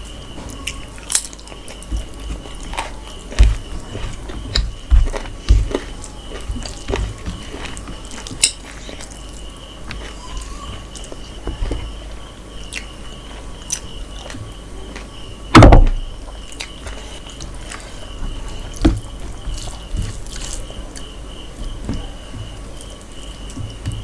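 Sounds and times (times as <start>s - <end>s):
person chewing with mouth clicks: 0.6s - 10.2s
loud thump: 15.5s - 16.2s.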